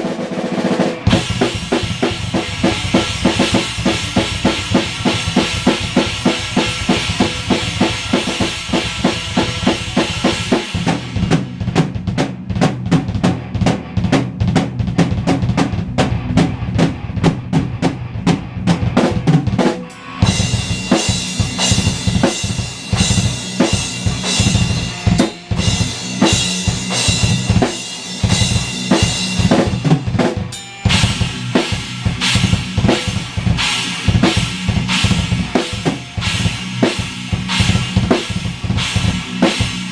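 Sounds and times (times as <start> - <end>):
fast metal drumming: 0.0 - 39.9
cymbal wash: 19.8 - 39.9.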